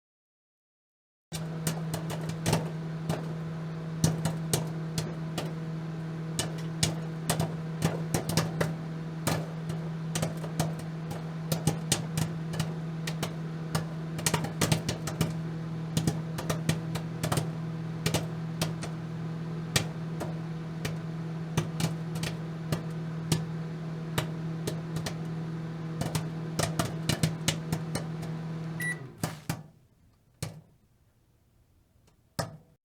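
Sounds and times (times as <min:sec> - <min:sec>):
microwave oven hum: 0:01.4 - 0:29.9
popcorn popping: 0:01.4 - 0:30.8, 0:32.0 - 0:32.7.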